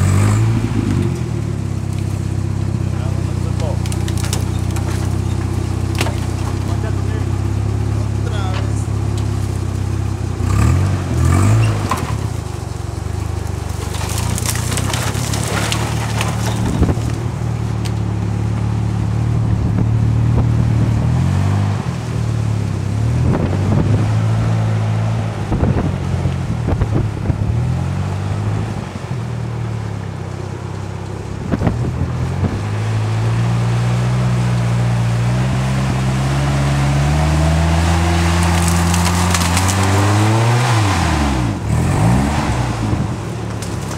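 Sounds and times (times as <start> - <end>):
vehicle engine running: 0.0 - 43.9
crunches and scrapes: 2.9 - 7.3, 13.2 - 18.0, 37.7 - 41.0.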